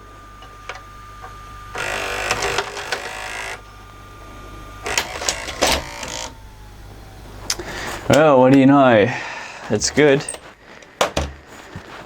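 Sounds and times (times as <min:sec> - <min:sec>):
motor and gears whirring: 0:01.7 - 0:03.7, 0:04.8 - 0:06.6
cassette ejecting clunks: 0:04.9 - 0:06.3, 0:11.0 - 0:11.5.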